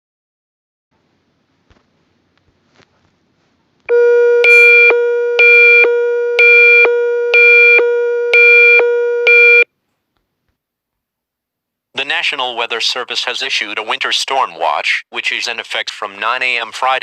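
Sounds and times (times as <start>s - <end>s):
pulsing high beep: 3.9s - 5.9s
steady low alert tone: 3.9s - 7.1s.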